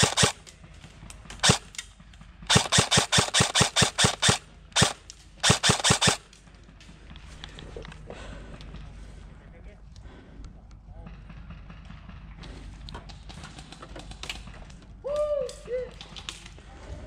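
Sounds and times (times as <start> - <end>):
airsoft gun shots: 0.0 - 0.4, 1.4 - 1.7, 2.5 - 6.2.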